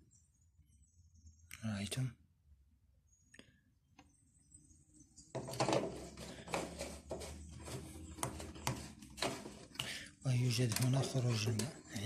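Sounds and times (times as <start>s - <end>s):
knocking and scraping: 5.3s - 9.8s, 10.5s - 12.0s.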